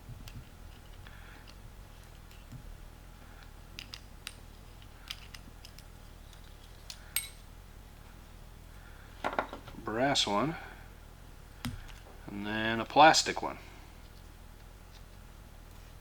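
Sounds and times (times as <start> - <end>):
small metal parts clicking and clinking: 3.8 - 7.4.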